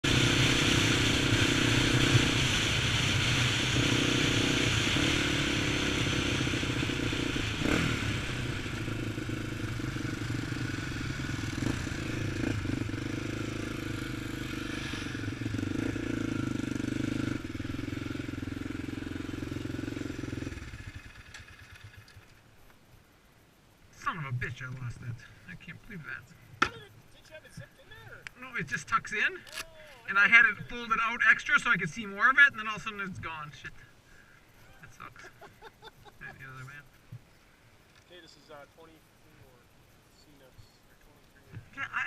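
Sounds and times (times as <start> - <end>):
quad engine running: 0.0 - 22.4.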